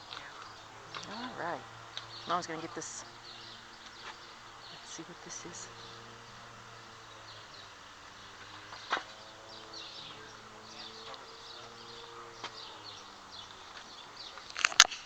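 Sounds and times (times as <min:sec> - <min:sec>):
small birds chirping: 0:00.0 - 0:15.0
sharp click: 0:14.5 - 0:15.0.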